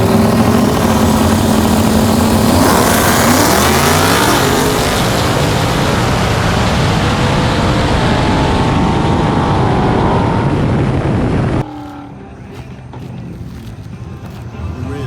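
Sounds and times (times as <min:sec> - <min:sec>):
wind noise: 0:00.0 - 0:11.9
car engines at full throttle: 0:00.0 - 0:15.0.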